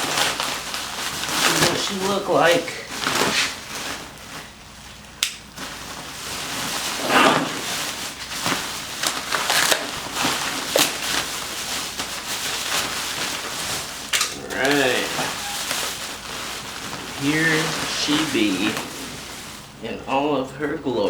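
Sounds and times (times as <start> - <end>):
packaging rustling and crinkling: 0.0 - 21.0.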